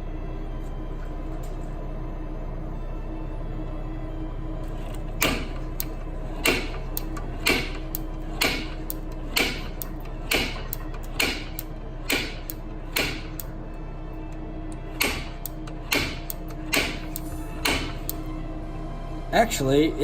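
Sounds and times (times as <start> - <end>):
steady low hum: 0.0 - 20.0
hammer striking steel punch: 5.2 - 13.5, 15.0 - 18.2.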